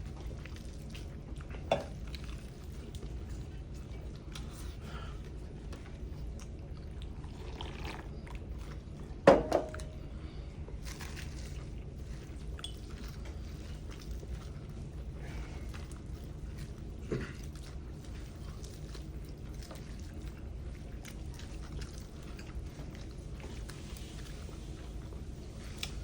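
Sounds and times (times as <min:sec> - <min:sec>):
chewing: 0:00.0 - 0:26.0
slurping: 0:06.0 - 0:09.1.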